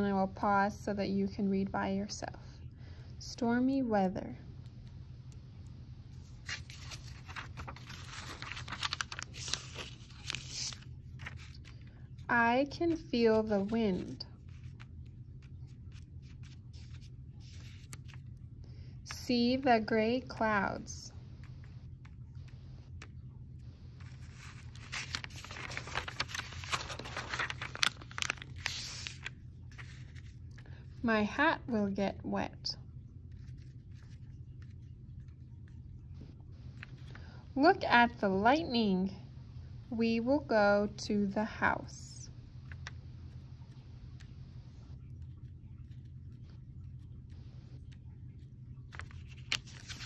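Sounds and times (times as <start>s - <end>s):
faint low hum: 0.0s - 50.0s
scraping and rustling handling noises: 6.1s - 12.2s, 24.0s - 30.7s, 48.9s - 50.0s
book pages rustling: 6.1s - 18.4s, 24.0s - 31.0s, 33.2s - 37.3s, 42.6s - 50.0s.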